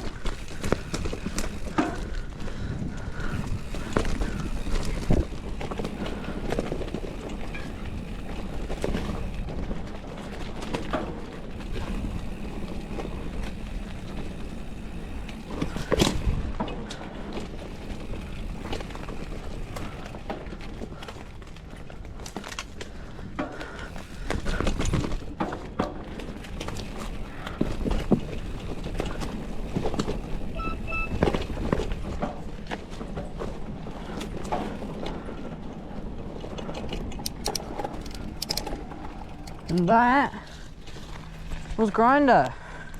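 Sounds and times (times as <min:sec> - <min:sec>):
bike rattling over bumps: 0:00.0 - 0:42.9
bike rushing down trail: 0:00.0 - 0:42.9.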